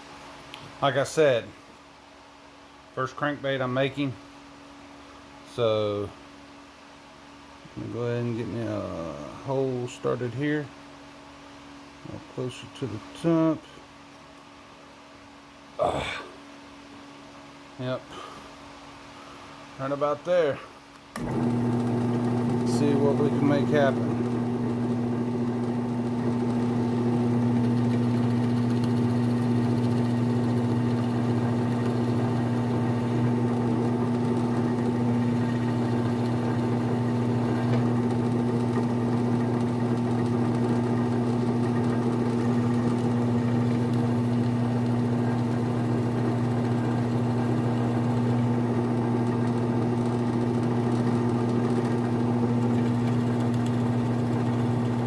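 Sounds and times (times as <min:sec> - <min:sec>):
drill press motor humming: 0:21.1 - 0:55.0
drill bit boring into wood: 0:21.2 - 0:55.0.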